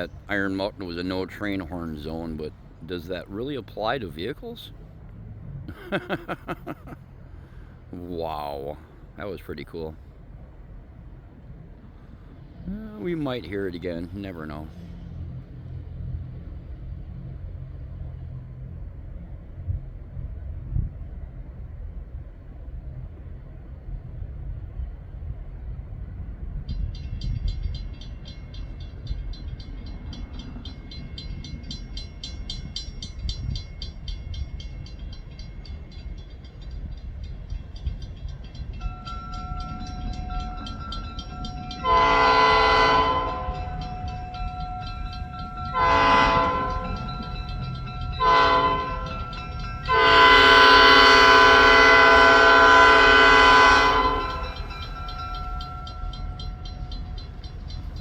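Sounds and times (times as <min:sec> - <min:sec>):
bell ringing: 0:26.9 - 0:52.4, 0:53.1 - 0:58.0
train horn blasts: 0:41.7 - 0:44.9, 0:45.6 - 0:47.1, 0:48.0 - 0:54.8.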